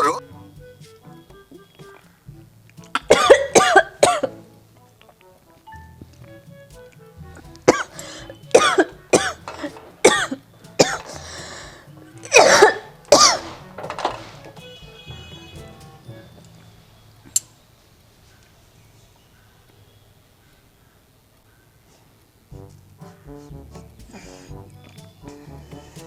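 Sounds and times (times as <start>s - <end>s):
woman coughing: 3.1s - 4.3s, 7.7s - 11.6s, 12.3s - 13.6s.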